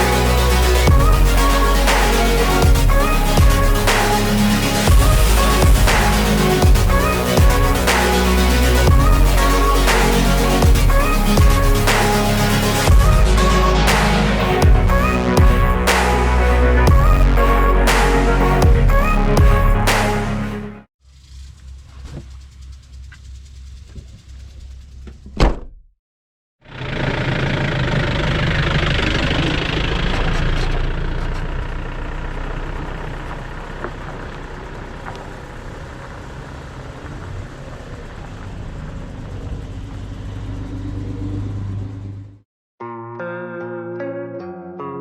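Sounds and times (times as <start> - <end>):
car engine hum and road noise: 21.1 - 25.8, 26.7 - 42.4.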